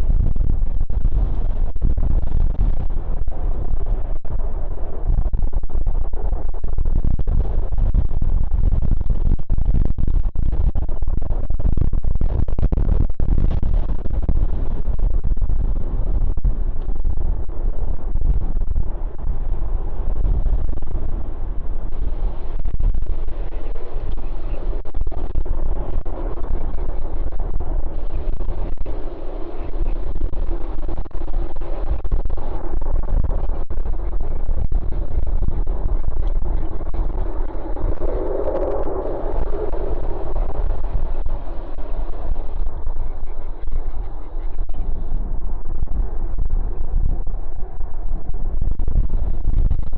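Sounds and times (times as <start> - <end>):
wind buffeting microphone: 0.0 - 49.9
distant jet engine: 18.8 - 49.9.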